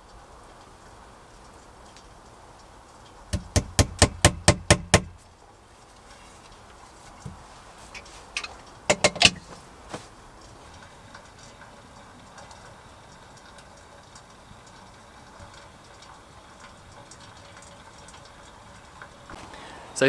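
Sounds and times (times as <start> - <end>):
faint scattered ticks: 0.0 - 20.0
sharp clicks and knocks: 7.2 - 10.1.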